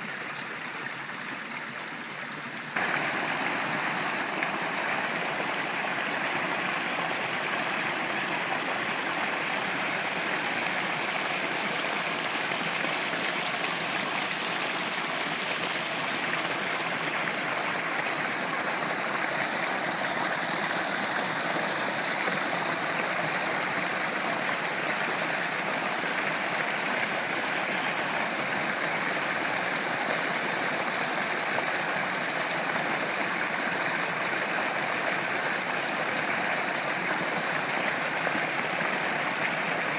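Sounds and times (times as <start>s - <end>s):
stream flowing over stones: 0.0s - 39.9s.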